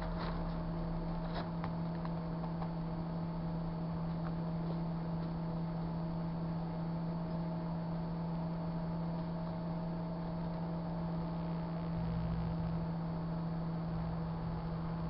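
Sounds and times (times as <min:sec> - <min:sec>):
microwave oven humming: 0:00.0 - 0:15.0
deep rumble: 0:10.9 - 0:15.0.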